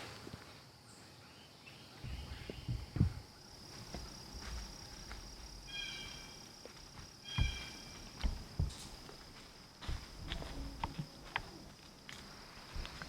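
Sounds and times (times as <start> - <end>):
insects droning: 0.0 - 13.0
low thumps: 2.0 - 3.3, 7.3 - 9.3.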